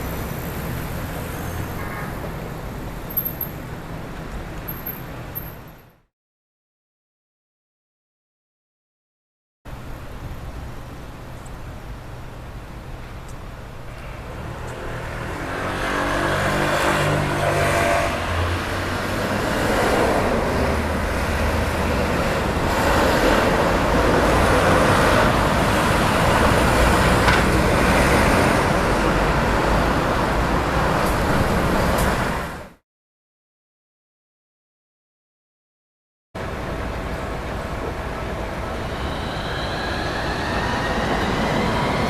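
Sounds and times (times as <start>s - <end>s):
road traffic: 0.0s - 6.1s, 9.7s - 32.8s, 36.4s - 42.0s
vehicle accelerating with whine: 13.9s - 32.8s, 36.4s - 42.0s.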